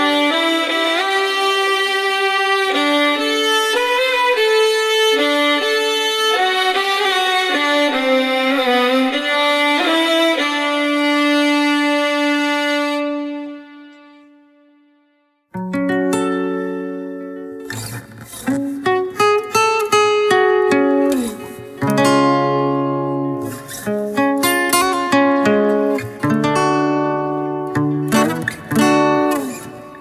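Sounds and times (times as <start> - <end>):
violins playing in harmony: 0.0 - 14.4.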